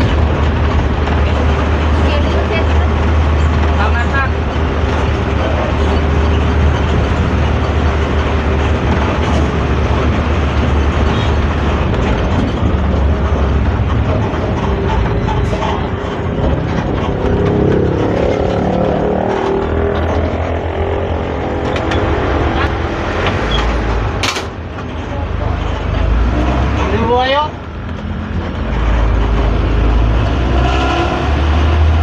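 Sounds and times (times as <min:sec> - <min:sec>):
bus diesel engine growl: 0:00.0 - 0:32.0
rising engine pitch: 0:13.3 - 0:24.2.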